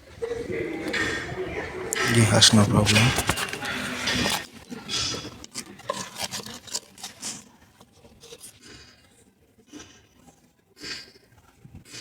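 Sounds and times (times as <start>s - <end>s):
hands handling plastic parts: 1.9s - 4.5s.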